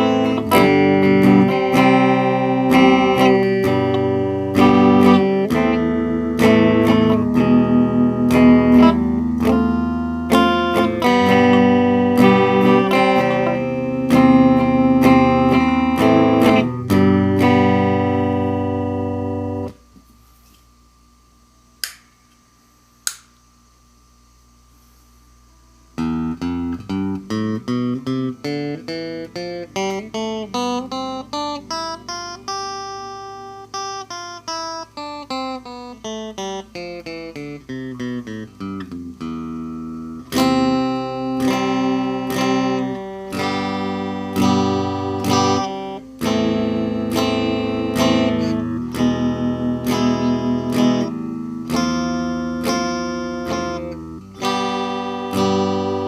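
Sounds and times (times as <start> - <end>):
clean electric guitar notes: 0.0 - 19.8, 26.0 - 56.0
strummed guitar chords: 0.0 - 19.8, 26.0 - 56.0
amp hum: 0.0 - 56.0
amp click: 21.8 - 22.4, 23.0 - 23.5.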